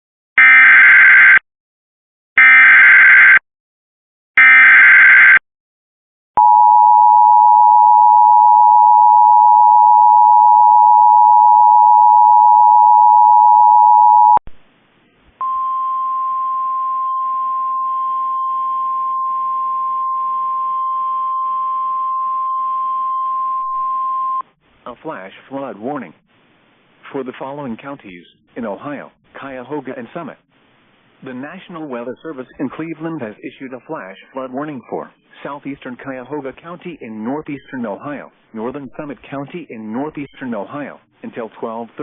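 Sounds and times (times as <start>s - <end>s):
steady single alarm tone: 4.4s - 5.4s.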